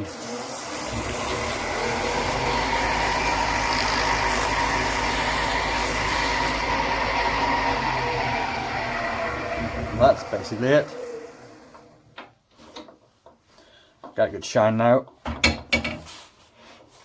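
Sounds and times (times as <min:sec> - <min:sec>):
lathe motor hum: 0:00.0 - 0:12.0
polishing pad hissing on wood: 0:00.5 - 0:10.6.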